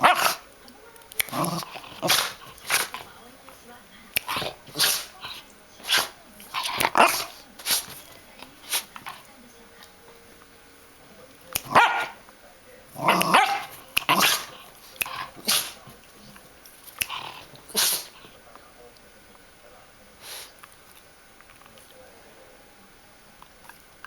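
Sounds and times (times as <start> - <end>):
pet sneezing: 0.0 - 0.5, 1.2 - 3.1, 4.2 - 9.3, 13.0 - 16.0, 16.9 - 18.3, 20.2 - 20.7.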